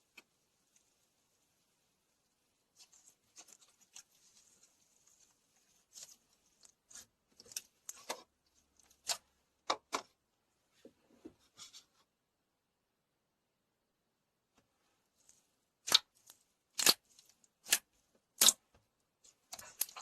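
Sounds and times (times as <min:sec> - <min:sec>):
slime squished clicking and popping: 0:16.8 - 0:17.0, 0:17.6 - 0:18.6.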